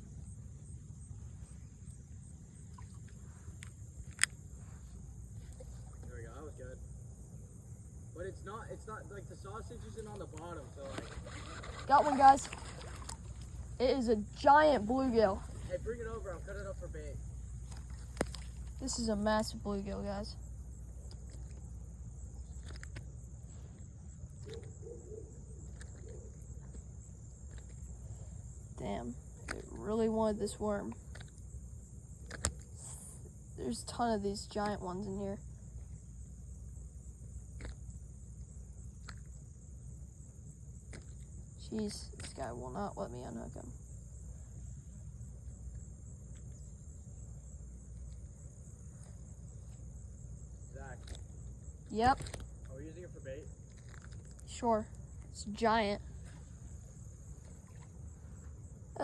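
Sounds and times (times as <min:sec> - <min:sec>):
high insect trill: 0:00.0 - 0:59.0
faint ticks: 0:02.5 - 0:06.2.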